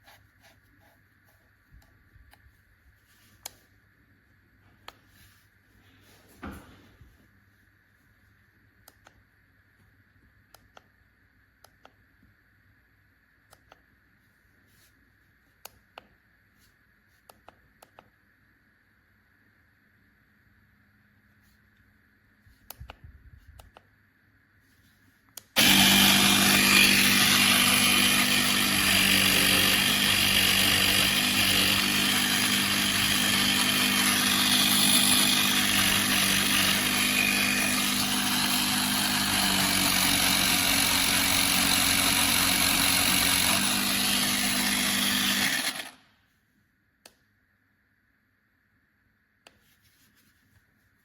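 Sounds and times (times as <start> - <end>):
air compressor humming: 25.6 - 46.0.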